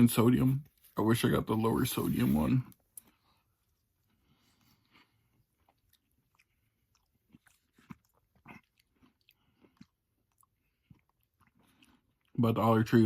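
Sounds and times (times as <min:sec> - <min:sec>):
person chewing: 0:02.1 - 0:12.4.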